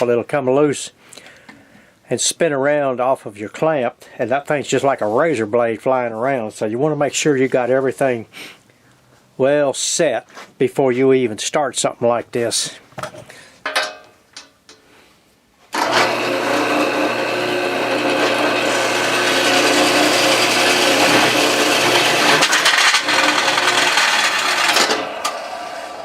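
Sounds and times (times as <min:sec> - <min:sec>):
power tool grinding sheet metal: 0:15.7 - 0:26.0.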